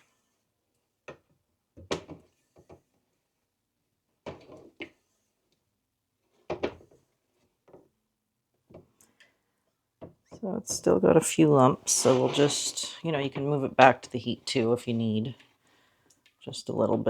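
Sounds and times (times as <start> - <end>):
spatula scraping a pot: 11.8 - 13.0.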